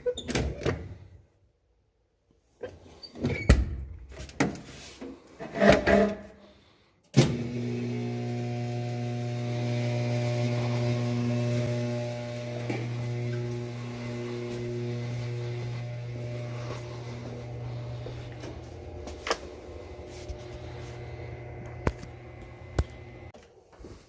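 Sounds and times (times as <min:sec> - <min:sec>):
workshop motor humming: 0:07.3 - 0:23.4.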